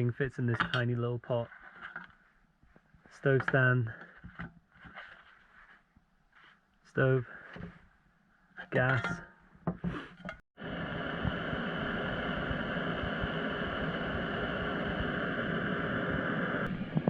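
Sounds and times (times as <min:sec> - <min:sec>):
camping stove hissing: 0:10.6 - 0:17.0.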